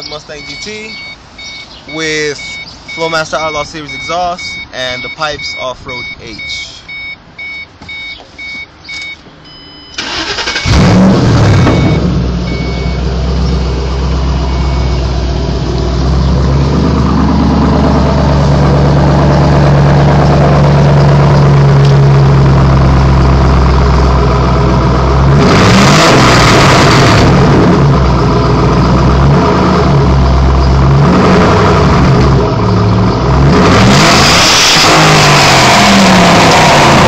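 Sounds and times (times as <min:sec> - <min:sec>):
warning chime beeping: 0:00.0 - 0:13.1, 0:14.4 - 0:15.2
engine revving: 0:10.0 - 0:37.0
car engine idling loudly: 0:10.1 - 0:25.8.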